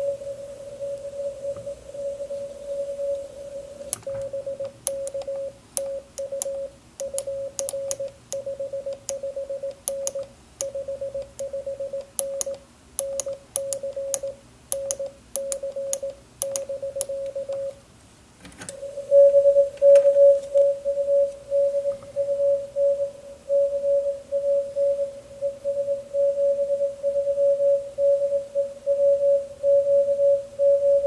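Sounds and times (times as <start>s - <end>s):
morse code tone: 0.0s - 17.8s, 18.8s - 31.0s
key clicks: 3.8s - 17.7s.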